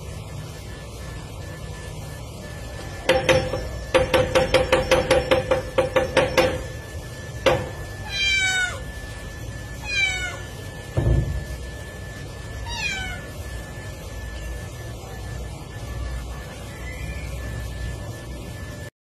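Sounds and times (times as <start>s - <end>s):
cat meowing: 8.0s - 8.9s, 9.8s - 10.5s, 12.6s - 13.4s.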